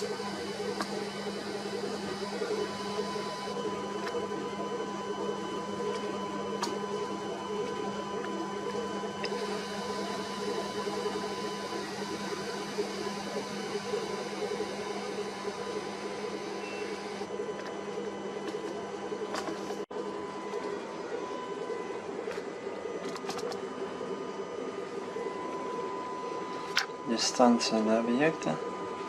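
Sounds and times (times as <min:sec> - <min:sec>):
ship machinery hum: 0:00.0 - 0:29.0.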